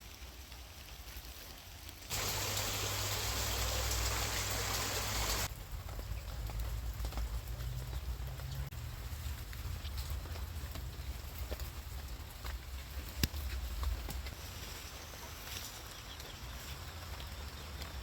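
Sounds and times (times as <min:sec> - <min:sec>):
rain falling on garden: 0:00.0 - 0:18.0
heavy rain hiss: 0:01.8 - 0:05.7
water drips: 0:01.9 - 0:18.0.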